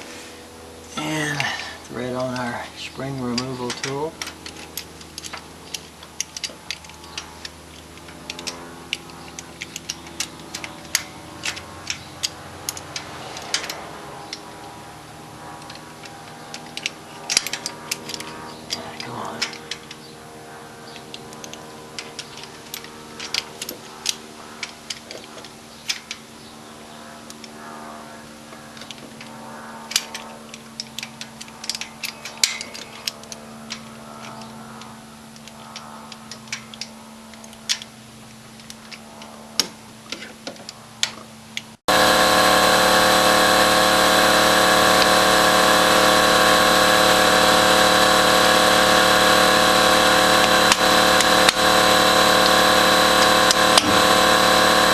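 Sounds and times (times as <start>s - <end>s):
low hum: 0.0s - 40.0s, 40.8s - 54.9s
hand tools tapping on metal: 1.3s - 14.8s, 15.6s - 20.1s, 28.5s - 41.7s
power tool running: 41.9s - 54.9s.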